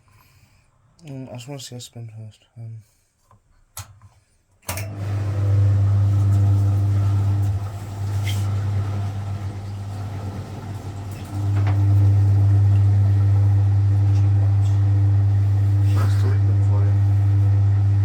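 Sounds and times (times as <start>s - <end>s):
washing machine motor humming: 4.7s - 18.0s.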